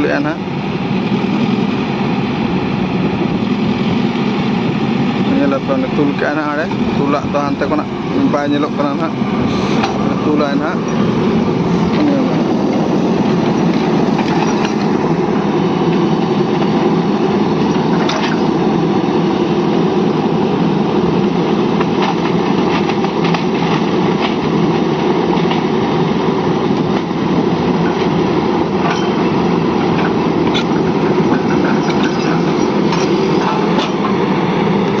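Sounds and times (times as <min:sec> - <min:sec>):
diesel engine running: 0:00.0 - 0:35.0
metallic clanks and clicks: 0:13.4 - 0:15.0, 0:17.6 - 0:18.5, 0:28.8 - 0:34.2.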